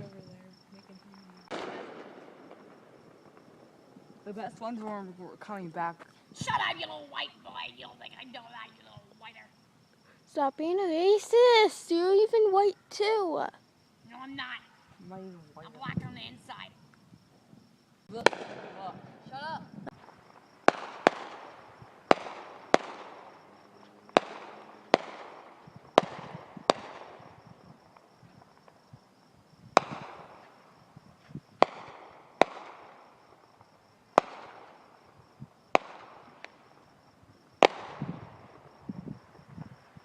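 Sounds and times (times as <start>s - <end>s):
small firework pops: 1.5s - 3.7s, 18.2s - 19.1s, 19.9s - 29.0s, 29.7s - 36.8s, 37.6s - 39.8s
fireworks bangs echoing: 1.5s - 4.3s, 18.1s - 29.1s, 29.7s - 37.0s, 37.6s - 40.0s.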